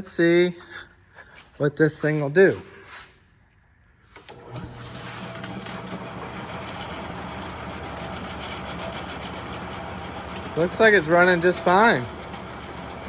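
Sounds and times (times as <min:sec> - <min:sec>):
bandsaw motor humming: 0:04.2 - 0:13.0.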